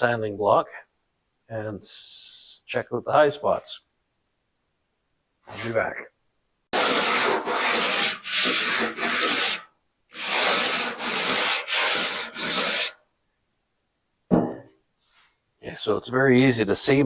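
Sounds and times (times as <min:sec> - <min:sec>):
sanding block scuffing metal: 0:06.8 - 0:13.0.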